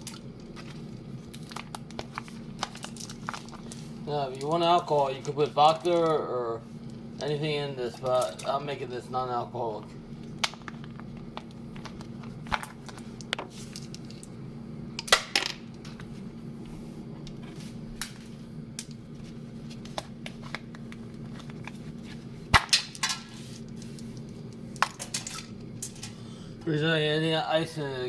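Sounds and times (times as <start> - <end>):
low steady hum: 0.0 - 28.0
kitchen items clicking and knocking: 24.8 - 26.2.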